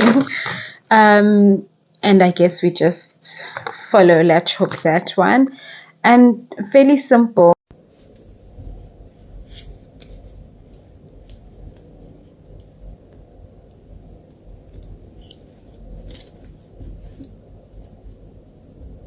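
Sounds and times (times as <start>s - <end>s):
crisp clicks and rustles: 9.3s - 18.3s.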